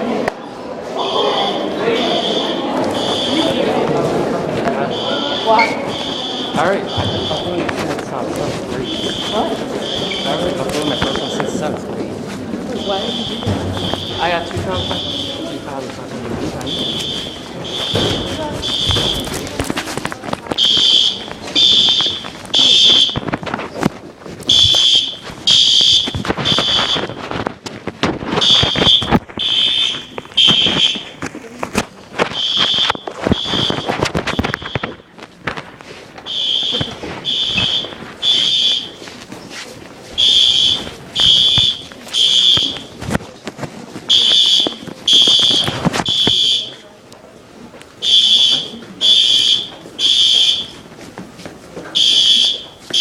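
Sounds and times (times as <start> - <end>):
fire alarm beeping: 1.0 - 3.9, 4.8 - 7.9, 8.8 - 11.8, 12.7 - 15.9, 16.6 - 19.6, 20.5 - 23.4, 24.4 - 27.3, 28.4 - 31.2, 32.2 - 35.1, 36.2 - 39.1, 40.2 - 43.0, 44.1 - 46.8, 48.0 - 50.9, 51.9 - 53.0.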